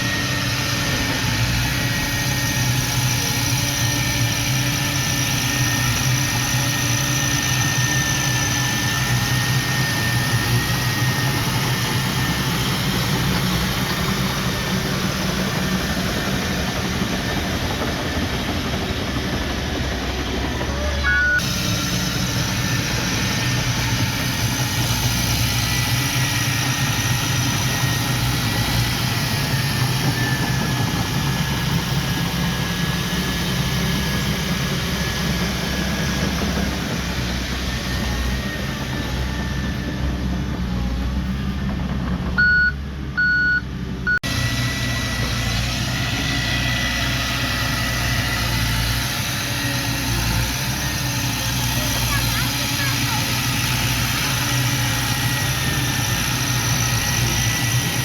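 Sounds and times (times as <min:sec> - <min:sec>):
heavy diesel machinery running: 0:00.0 - 0:58.0
thin high tone: 0:20.9 - 0:21.5
reversing alarm beeps: 0:21.0 - 0:21.5, 0:42.4 - 0:44.3.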